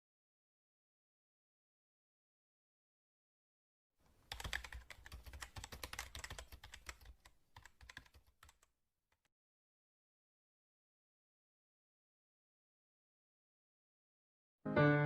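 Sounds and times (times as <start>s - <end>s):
computer keyboard typing: 4.3s - 8.7s.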